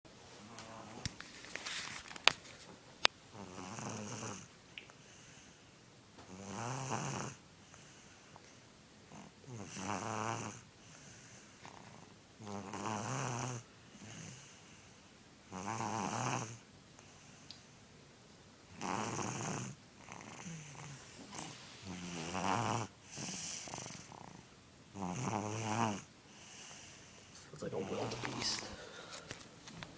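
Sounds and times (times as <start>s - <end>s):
baby snoring: 3.3s - 4.5s, 6.3s - 7.4s, 9.1s - 14.5s, 15.5s - 16.6s, 18.7s - 29.3s.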